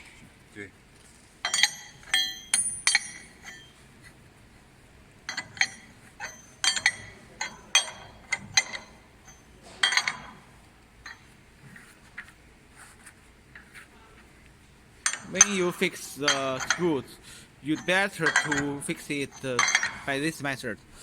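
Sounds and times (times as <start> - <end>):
metallic clinks of wrench and screws: 1.4 - 3.8, 5.3 - 10.4, 11.0 - 11.3, 15.0 - 17.0, 17.7 - 20.2.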